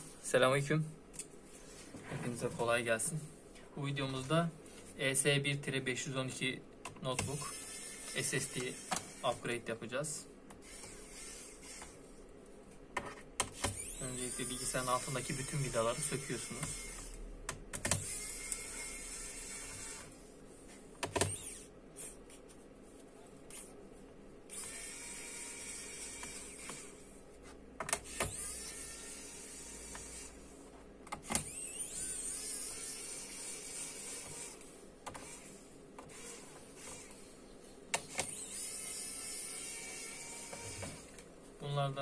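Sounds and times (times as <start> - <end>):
electric screwdriver whirring: 7.2 - 9.3, 10.6 - 12.0, 13.4 - 17.2, 17.8 - 20.1, 21.0 - 21.7, 24.5 - 27.0, 27.9 - 30.4, 31.2 - 37.2, 38.0 - 41.2.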